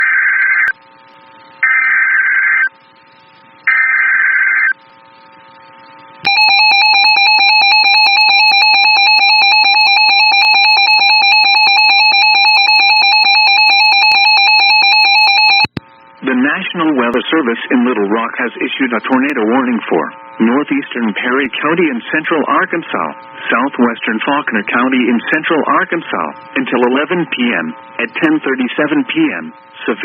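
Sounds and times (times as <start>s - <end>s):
piercing alert tone: 6.3s - 15.7s
radio static: 15.6s - 30.0s.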